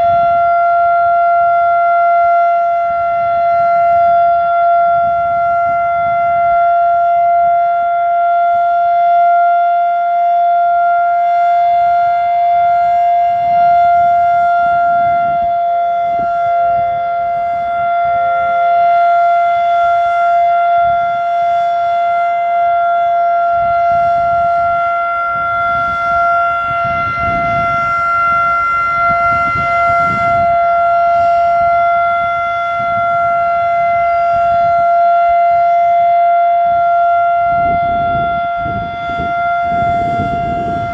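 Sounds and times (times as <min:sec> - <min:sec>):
warning siren steady pitch: 0:00.0 - 0:40.9.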